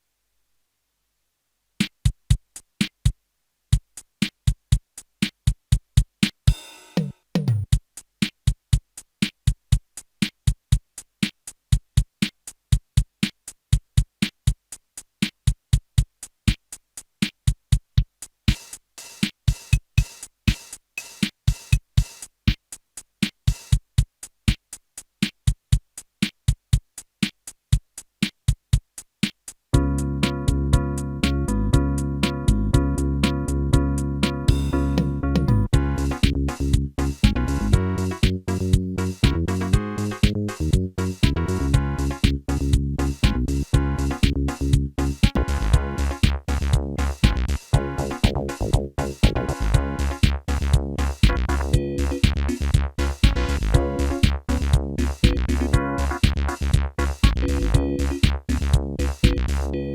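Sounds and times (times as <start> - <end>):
electronic drum beat: 3.8 - 29.5, 30.2 - 30.6, 32.2 - 33.6, 34.2 - 59.9
sustained keyboard chord: 29.8 - 40.7, 47.8 - 50.2, 51.6 - 52.3, 53.4 - 54.3.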